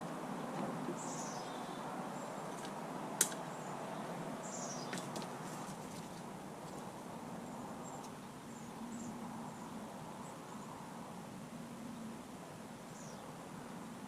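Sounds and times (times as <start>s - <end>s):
small bird chirping: 1.0s - 2.6s, 3.4s - 5.1s.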